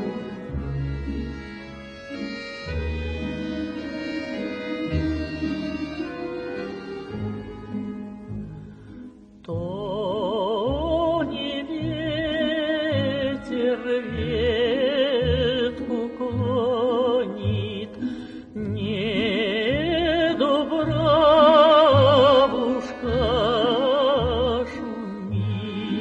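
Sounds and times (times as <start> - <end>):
instrumental accompaniment with bass: 0.0 - 10.0, 10.7 - 26.0
woman singing folk song with vibrato: 3.7 - 7.7, 9.4 - 26.0.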